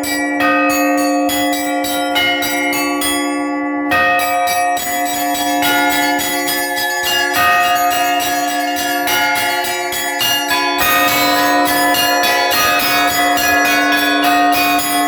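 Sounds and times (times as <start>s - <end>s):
lingering hum of large bells: 0.0s - 15.0s
small high bells struck: 0.0s - 15.0s.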